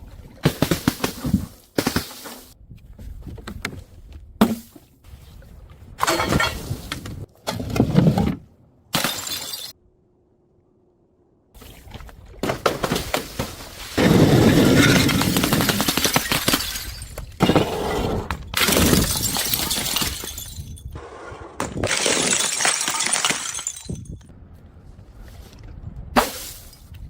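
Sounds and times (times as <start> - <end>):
glass cracking and shattering: 14.6 - 17.4, 18.6 - 20.8, 21.9 - 24.2.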